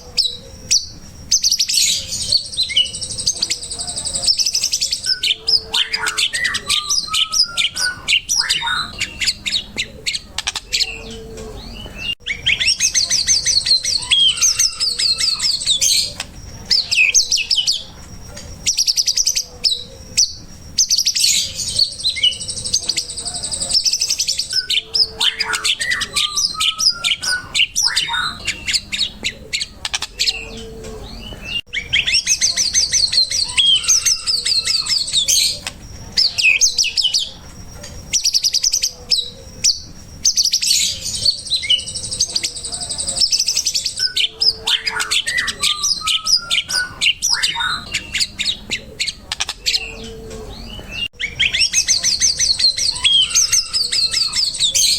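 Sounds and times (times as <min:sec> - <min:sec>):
bird song trills and whistles: 0:00.0 - 0:54.9.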